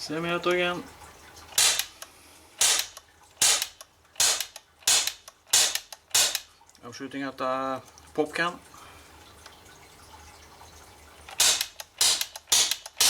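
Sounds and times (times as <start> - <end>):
bb gun shots: 1.6 - 1.9, 2.6 - 6.5, 11.4 - 13.0.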